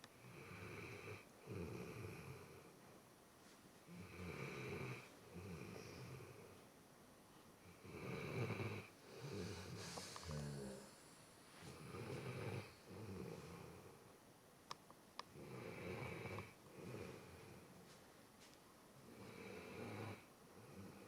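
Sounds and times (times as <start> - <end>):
pet snoring: 0.2 - 2.6, 3.9 - 6.6, 7.7 - 14.0, 15.3 - 17.6, 19.1 - 21.0.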